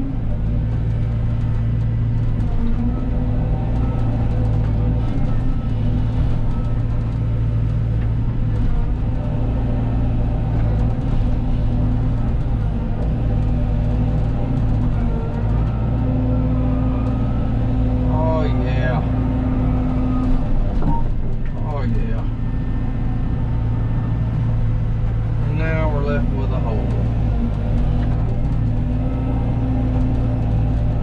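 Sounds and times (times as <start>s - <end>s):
excavator diesel engine running: 0.0s - 31.0s.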